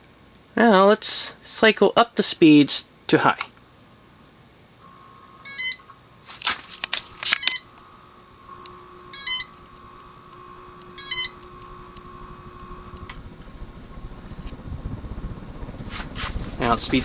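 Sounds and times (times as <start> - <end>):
steady hum: 0.0 - 17.0
ceiling fan receiver beeping: 4.8 - 17.0
sharp clicks: 5.8 - 14.6.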